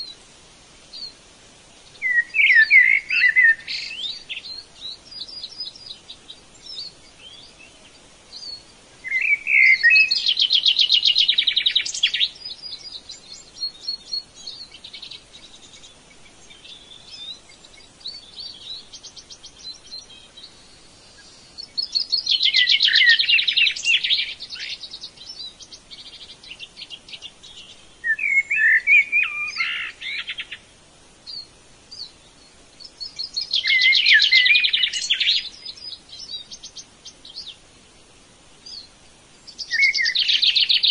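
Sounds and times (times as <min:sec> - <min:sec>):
songbird trilling song: 0:00.0 - 0:00.2, 0:00.9 - 0:01.2, 0:01.8 - 0:37.8, 0:38.6 - 0:40.9
twittering bird chirps: 0:38.7 - 0:40.9.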